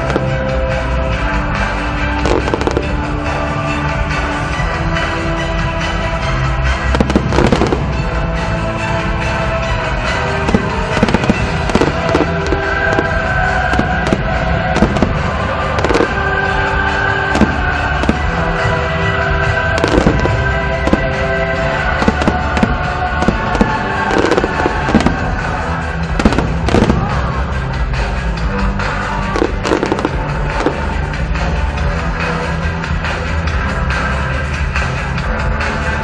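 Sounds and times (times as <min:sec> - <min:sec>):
loud music: 0:00.0 - 0:36.0
fireworks bangs: 0:02.2 - 0:03.4, 0:06.8 - 0:08.2, 0:10.1 - 0:27.4, 0:29.0 - 0:31.1.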